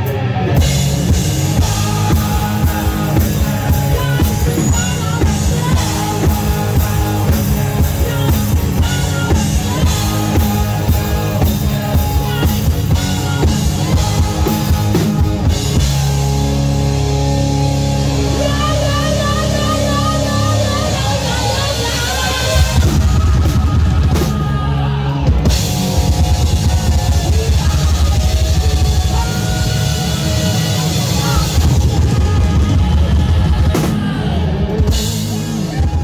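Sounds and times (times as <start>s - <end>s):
driving drum beat: 0.0s - 36.0s
rock song: 0.0s - 36.0s.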